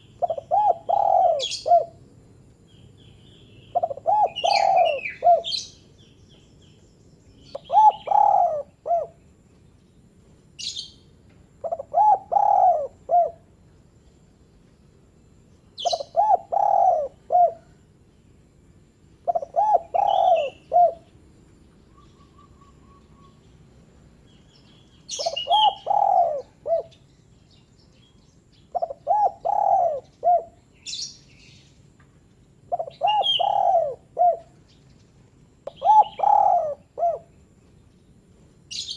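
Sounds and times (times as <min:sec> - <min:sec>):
dove cooing: 0:00.0 - 0:02.0, 0:03.7 - 0:05.8, 0:07.5 - 0:09.2, 0:11.6 - 0:13.6, 0:15.8 - 0:17.8, 0:19.2 - 0:21.2, 0:25.1 - 0:27.0, 0:28.7 - 0:31.0, 0:32.6 - 0:34.7, 0:35.7 - 0:37.4
small birds chirping: 0:00.0 - 0:14.9, 0:15.5 - 0:18.3, 0:19.2 - 0:38.9.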